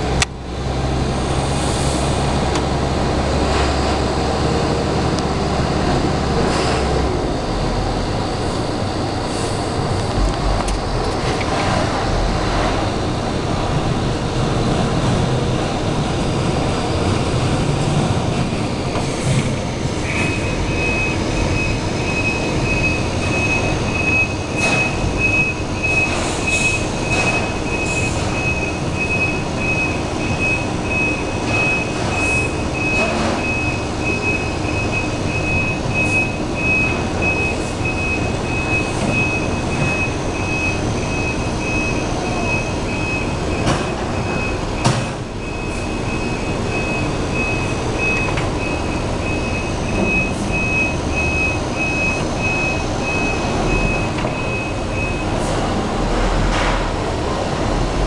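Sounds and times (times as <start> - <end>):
garbage truck running: 0.0 - 58.0
high steady beeping alarm: 20.2 - 55.4.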